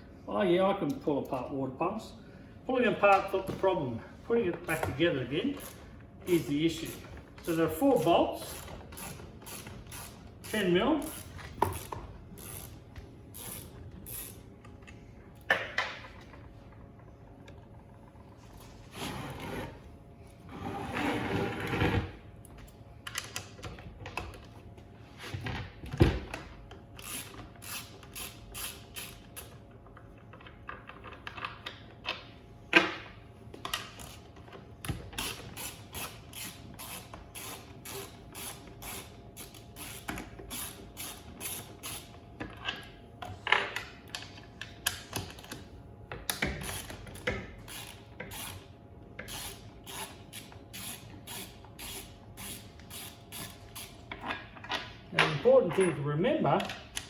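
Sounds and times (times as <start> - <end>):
ratchet spanner clicking: 8.4 - 14.4, 27.0 - 29.6, 35.2 - 42.1, 46.4 - 53.9.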